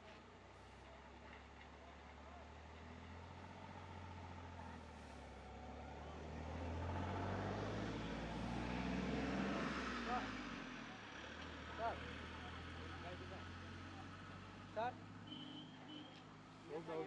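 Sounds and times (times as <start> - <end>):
vehicle engine humming: 0.0 - 17.0.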